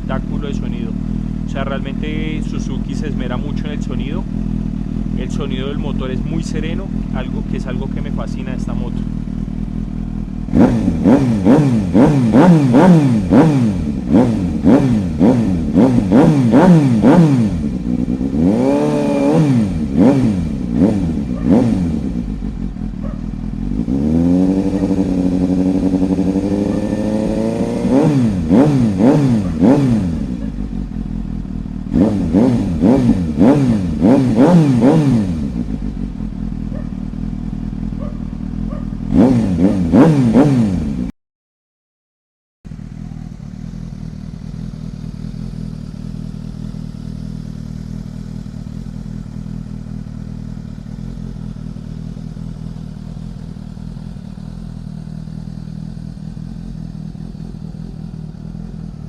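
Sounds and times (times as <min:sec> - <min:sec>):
motorcycle engine revving: 0:00.0 - 0:41.1, 0:42.7 - 0:59.0.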